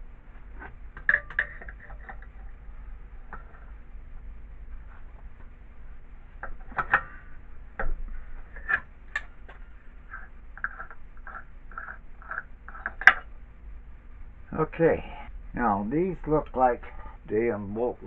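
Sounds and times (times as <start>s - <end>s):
metal clicks and knocks: 1.0s - 2.4s, 6.4s - 7.2s.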